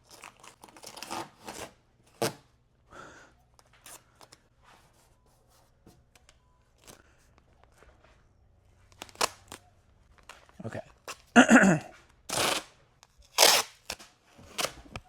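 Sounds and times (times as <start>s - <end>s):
tape rustling and scraping: 0.0s - 2.5s, 3.6s - 15.0s
tape tearing: 0.0s - 2.5s, 8.9s - 9.6s, 12.3s - 15.0s.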